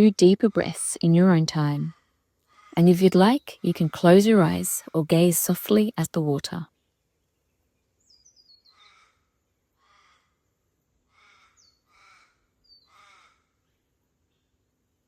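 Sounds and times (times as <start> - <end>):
harsh caw-like bird calls: 2.5 - 2.8, 8.6 - 13.6.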